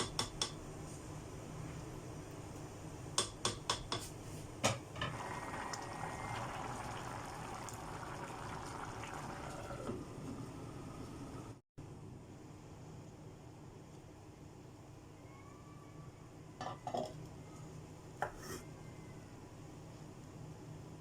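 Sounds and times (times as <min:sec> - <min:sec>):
liquid pouring into pot: 0:05.2 - 0:09.9.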